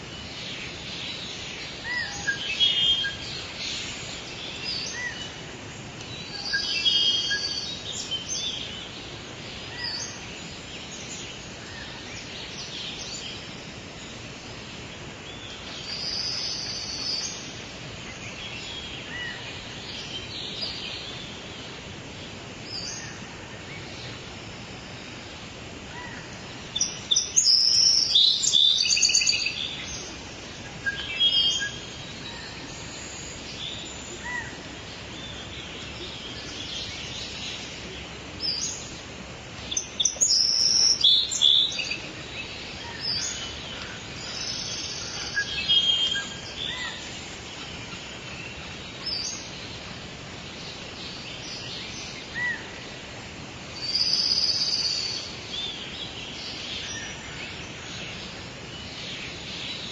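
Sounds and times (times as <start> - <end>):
steady background hiss: 0.0 - 59.9
birds chirping and singing: 39.6 - 52.8.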